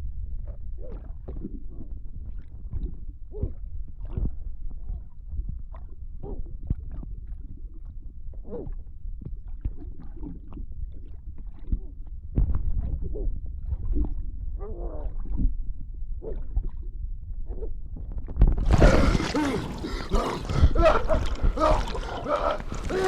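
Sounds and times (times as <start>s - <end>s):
low underwater rumble: 18.4s - 23.0s
water gurgling and splashing: 18.5s - 23.0s
muffled cries: 18.7s - 23.0s.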